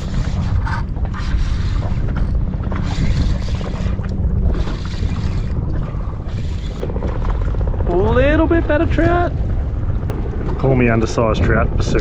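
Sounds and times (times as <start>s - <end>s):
wind rumbling on microphone: 0.0s - 12.0s.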